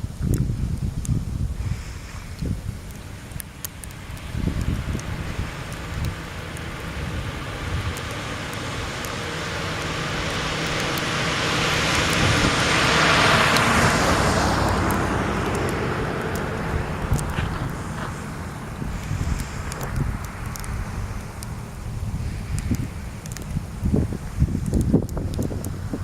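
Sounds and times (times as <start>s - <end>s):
road vehicle passing by: 1.6s - 26.0s.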